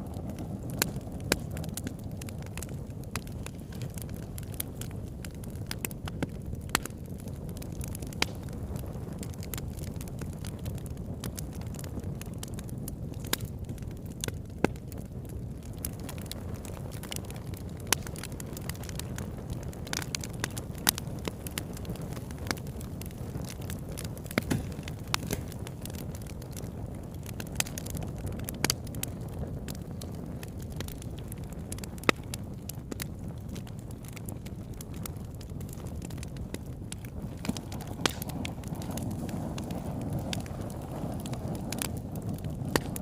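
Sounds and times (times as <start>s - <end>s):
burning wood crackling and popping: 0.0s - 43.0s
low rumble of flames: 0.0s - 43.0s.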